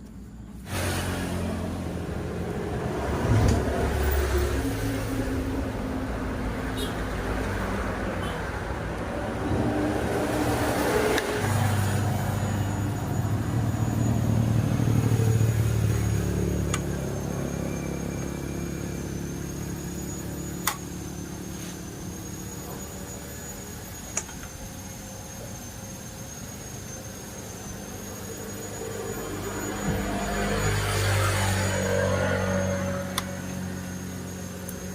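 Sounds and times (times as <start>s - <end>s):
faint high whine: 0.0s - 34.9s
vehicle engine running: 0.0s - 34.9s.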